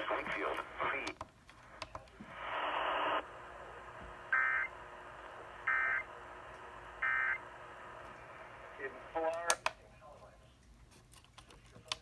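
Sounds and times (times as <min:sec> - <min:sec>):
radio static hiss: 0:00.0 - 0:09.6.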